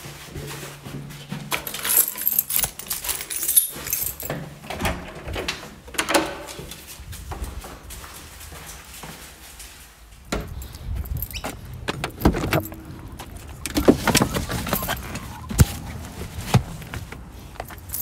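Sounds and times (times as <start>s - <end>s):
jangling and clattering handling: 1.5s - 5.3s, 10.4s - 18.0s.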